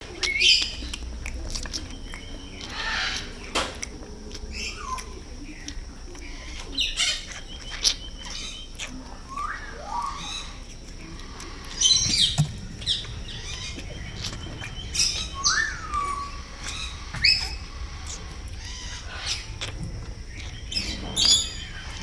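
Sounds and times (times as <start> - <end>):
rabbit sucking clicks and smacks: 0.0 - 22.0
high gliding chirps: 11.6 - 22.0.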